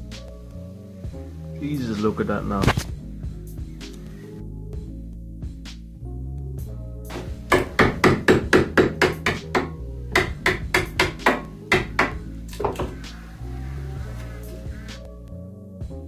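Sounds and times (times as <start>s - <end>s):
hammer blows on wood: 7.1s - 13.3s.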